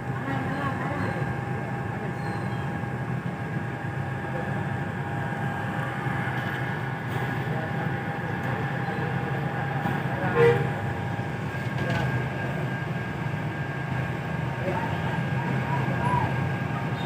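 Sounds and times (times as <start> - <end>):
bus engine rumbling: 0.0 - 17.0.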